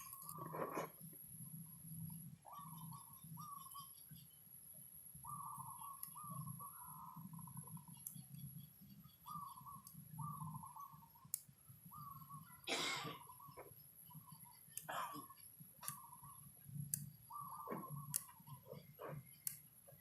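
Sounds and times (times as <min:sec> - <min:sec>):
bird warbling calls: 0:02.4 - 0:04.4, 0:05.2 - 0:16.5, 0:17.2 - 0:19.3.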